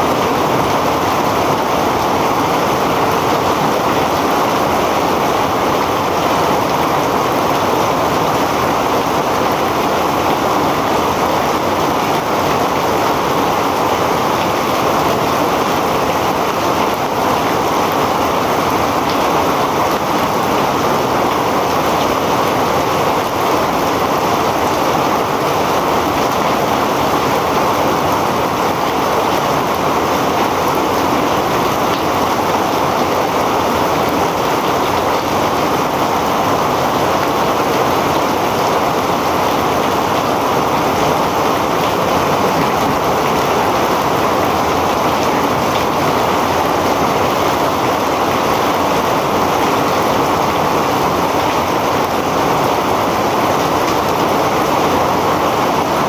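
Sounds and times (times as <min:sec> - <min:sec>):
heavy rain falling: 0:00.0 - 0:56.0.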